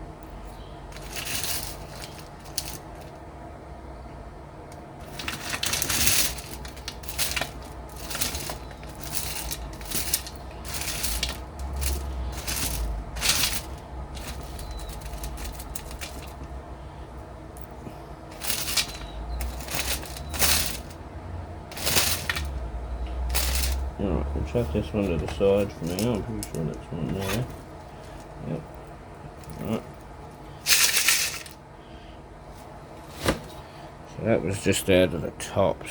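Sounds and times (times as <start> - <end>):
steady low hum: 0.0 - 35.9
wet gravel rattling in a sieve: 0.9 - 3.1, 5.0 - 16.6, 18.3 - 21.0, 21.7 - 22.6, 23.2 - 23.9, 24.5 - 28.2, 30.6 - 31.6.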